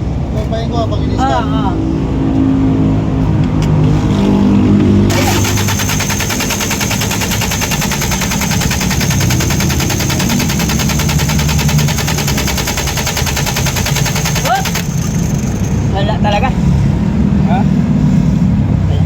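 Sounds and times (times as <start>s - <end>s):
diesel engine cranking: 5.1s - 16.4s.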